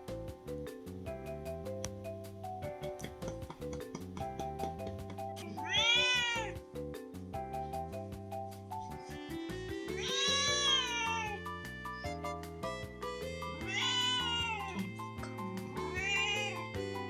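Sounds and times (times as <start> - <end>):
background music with steady beat: 0.0 - 17.0
cat meowing: 5.4 - 6.6, 9.2 - 12.2, 13.6 - 15.0, 15.7 - 16.8.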